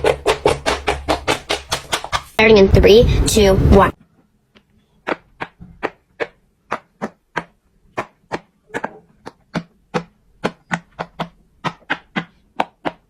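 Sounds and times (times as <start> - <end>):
fidget toy bubbles popping: 5.1 - 13.0.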